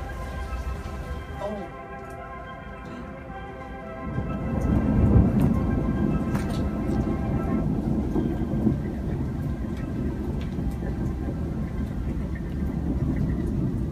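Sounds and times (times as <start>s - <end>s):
pitched tone: 0.0s - 8.7s
rain patter: 0.0s - 13.9s
rolling thunder rumble: 0.0s - 13.9s.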